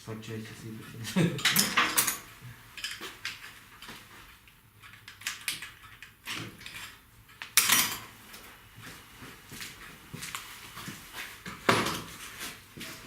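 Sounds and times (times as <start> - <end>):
metal parts and tools clinking: 1.4 - 3.5, 4.8 - 8.1.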